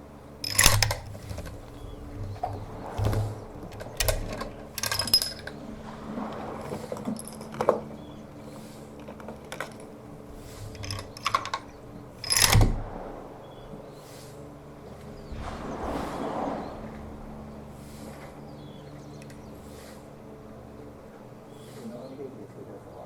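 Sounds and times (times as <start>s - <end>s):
metallic clicks of rifle handling: 0.4s - 5.6s, 9.5s - 13.1s.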